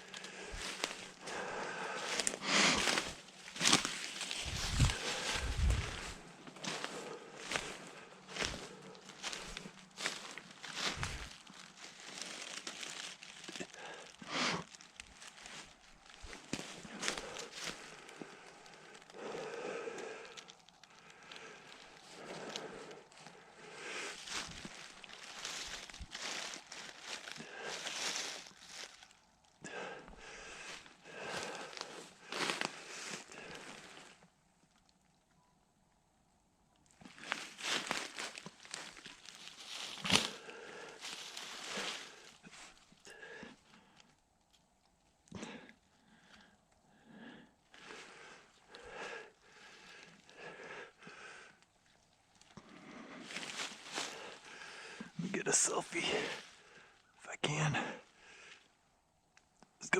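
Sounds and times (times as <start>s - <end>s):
person breathing close to microphone: 0.0s - 15.7s, 16.3s - 29.0s, 29.6s - 34.2s, 37.1s - 44.1s, 45.3s - 51.6s, 52.6s - 58.8s
dry leaves rustling: 0.0s - 19.4s, 20.2s - 29.2s, 29.8s - 34.2s, 37.0s - 44.0s, 47.8s - 55.0s.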